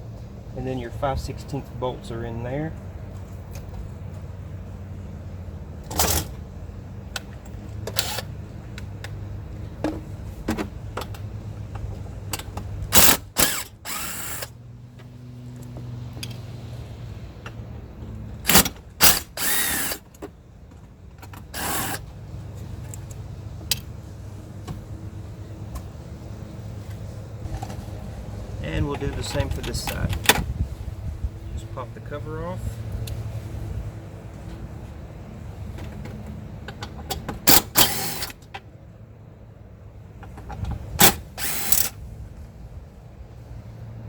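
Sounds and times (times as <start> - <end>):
drill clicks: 7.9 - 8.3, 13.0 - 14.5, 18.5 - 20.1, 21.4 - 22.0, 37.5 - 38.3, 41.0 - 42.0
power drill motor whine: 8.0 - 8.3, 13.0 - 14.5, 19.0 - 20.0, 21.6 - 22.0, 37.5 - 38.3, 41.1 - 41.9.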